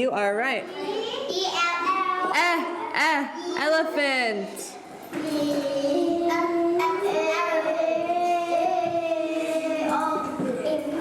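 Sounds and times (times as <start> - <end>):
children chanting sing-song: 5.2 - 11.0.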